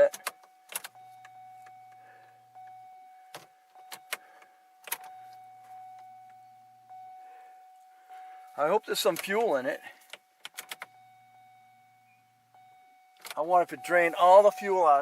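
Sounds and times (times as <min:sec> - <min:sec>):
sharp clicks: 0:00.0 - 0:01.0, 0:10.1 - 0:10.9.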